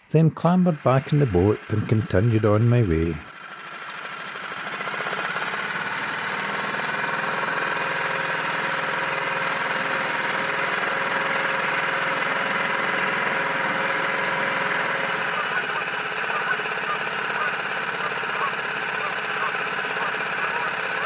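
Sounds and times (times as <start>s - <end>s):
outboard motor running: 2.5s - 21.0s.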